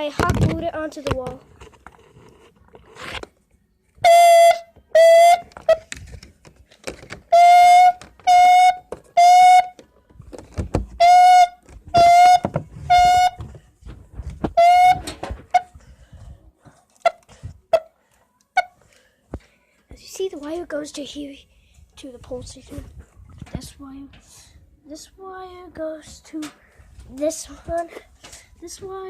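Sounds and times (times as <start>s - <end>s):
fire alarm horn blasts: 4.0s - 5.5s, 7.3s - 9.8s.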